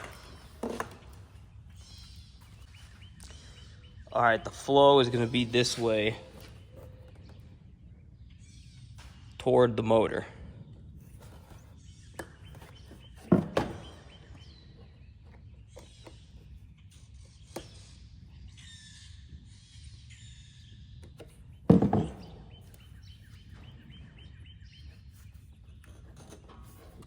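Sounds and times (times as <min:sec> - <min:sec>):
birds chirping: 0:00.0 - 0:27.0
loud knocks with clatter: 0:12.2 - 0:14.4, 0:21.7 - 0:22.9.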